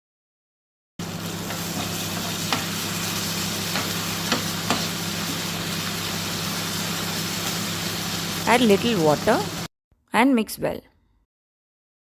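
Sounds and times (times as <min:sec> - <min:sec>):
food sizzling in a hot pan: 0:01.0 - 0:09.7
spatula clicking against pan: 0:01.5 - 0:02.8, 0:03.7 - 0:04.9.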